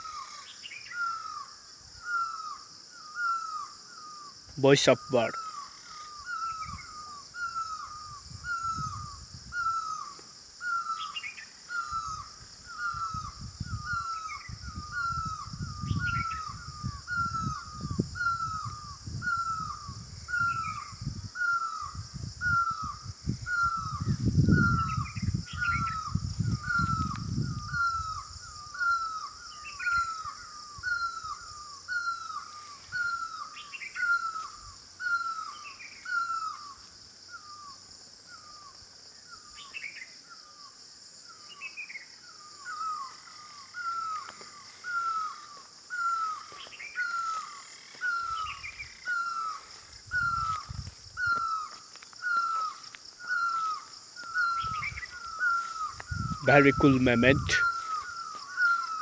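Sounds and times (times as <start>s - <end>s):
higher bird chirps: 42.6s - 59.0s.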